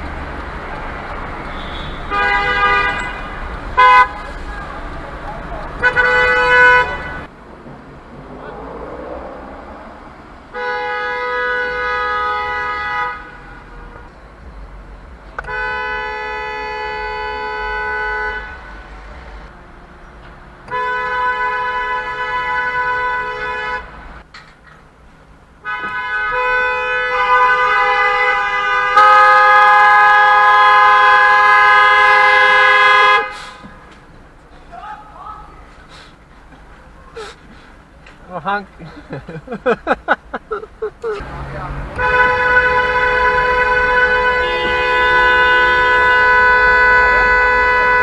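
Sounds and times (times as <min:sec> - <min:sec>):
car horn blasts: 0:00.9 - 0:07.3, 0:10.5 - 0:19.4, 0:20.7 - 0:24.0, 0:25.6 - 0:33.7, 0:41.2 - 0:48.0.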